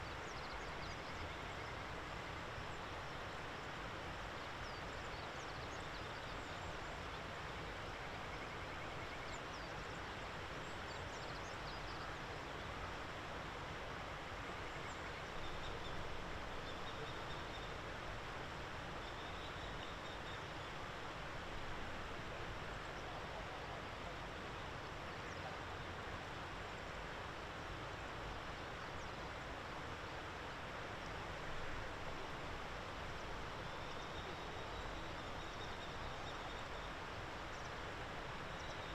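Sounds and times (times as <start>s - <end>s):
outdoor background noise: 0.0s - 38.9s.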